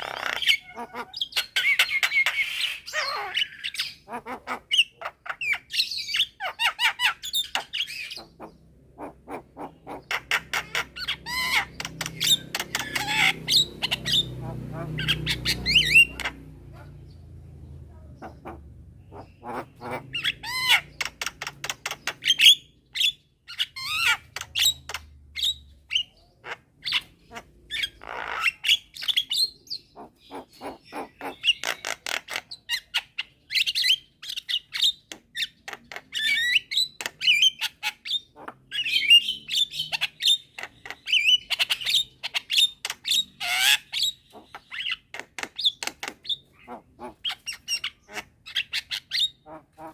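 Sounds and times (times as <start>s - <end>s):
mynas calling and chattering: 0.0s - 25.1s, 46.2s - 49.9s.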